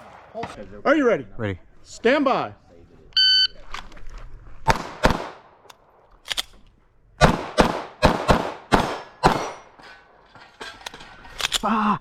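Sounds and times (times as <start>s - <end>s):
pistol shots: 4.7s - 5.5s, 7.2s - 9.7s.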